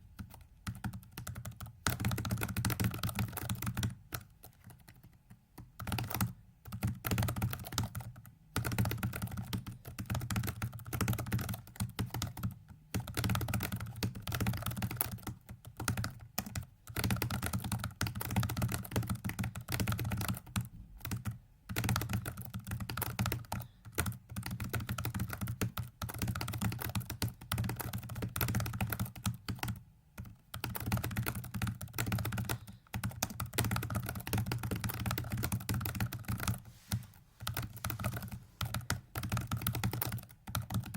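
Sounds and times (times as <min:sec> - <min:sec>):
keyboard typing rapidly: 0:00.2 - 0:36.7, 0:37.4 - 0:40.9.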